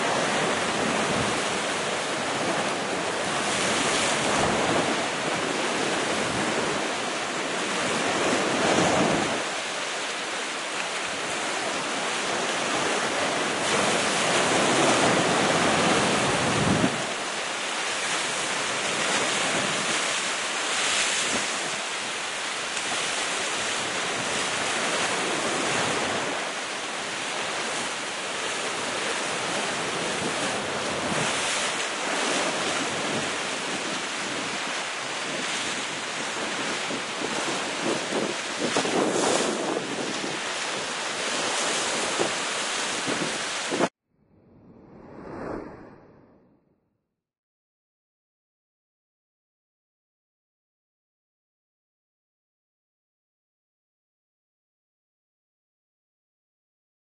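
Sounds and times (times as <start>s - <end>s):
sea waves breaking on rocks: 0.0s - 43.9s
wind buffeting microphone: 32.2s - 46.5s.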